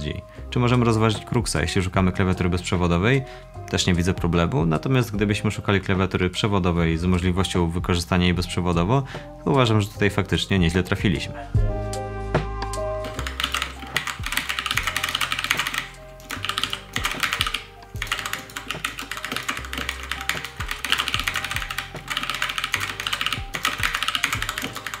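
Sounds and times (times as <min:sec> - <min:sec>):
fast typing on mechanical keyboard: 0:13.0 - 0:25.0.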